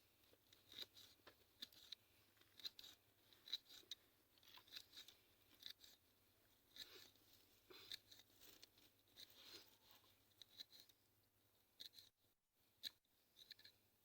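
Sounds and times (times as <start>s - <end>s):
faint crisp cutting snips: 0.4s - 11.0s, 11.8s - 12.1s.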